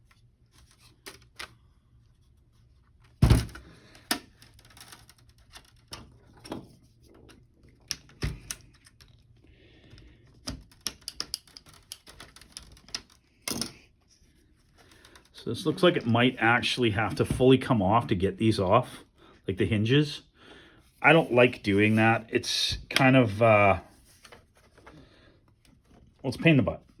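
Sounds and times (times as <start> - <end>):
plastic parts clicking and snapping: 0.0 - 1.6, 3.0 - 13.9.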